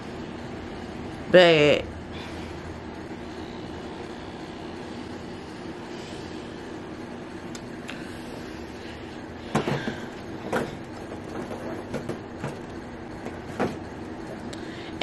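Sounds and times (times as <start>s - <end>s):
hair steamer hissing and humming: 2.7s - 7.3s.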